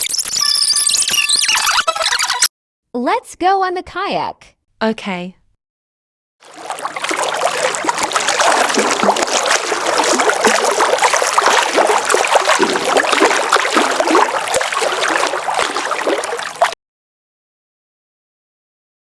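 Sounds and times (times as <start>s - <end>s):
water splashing and sloshing: 6.4s - 16.8s.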